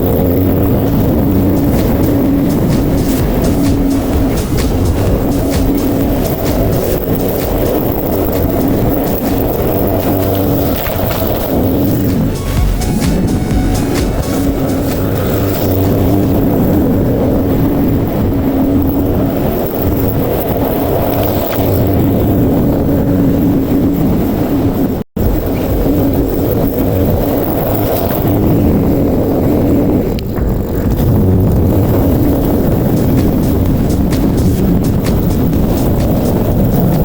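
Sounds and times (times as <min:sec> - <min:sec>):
lawn mower engine running: 0:00.0 - 0:16.9, 0:31.9 - 0:37.0.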